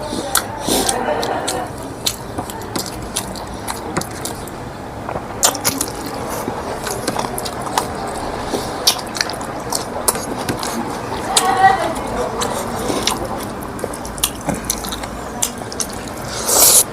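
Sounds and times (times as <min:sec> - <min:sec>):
wet chewing: 0:00.0 - 0:16.9
lip smacks: 0:00.2 - 0:04.6, 0:05.4 - 0:16.9
sharp mouth clicks: 0:12.4 - 0:16.9.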